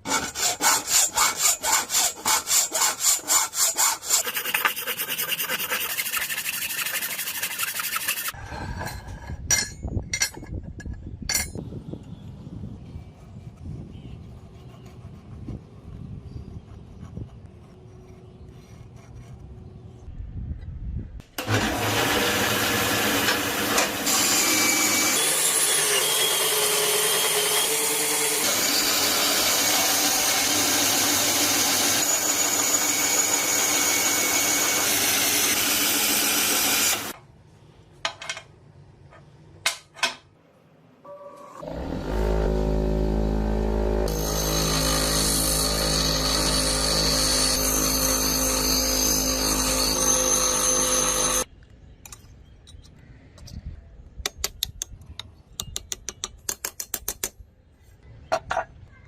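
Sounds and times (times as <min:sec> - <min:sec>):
power tool running on metal: 0:21.4 - 0:37.2, 0:41.6 - 0:51.4.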